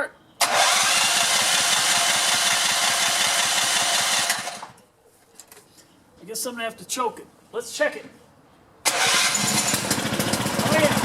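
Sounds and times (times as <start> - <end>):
electric starter cranking engine: 0.4 - 4.8, 8.8 - 11.0.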